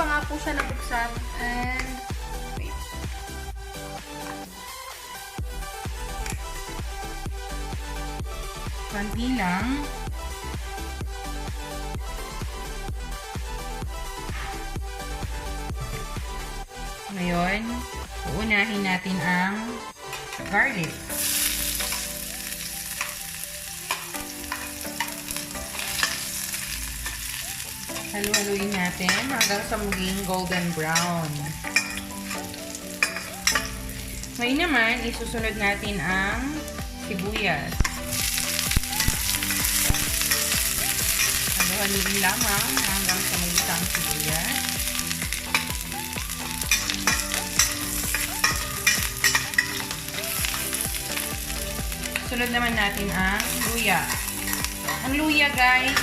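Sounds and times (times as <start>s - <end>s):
garlic sizzling in oil: 21.0s - 34.8s, 37.6s - 56.0s.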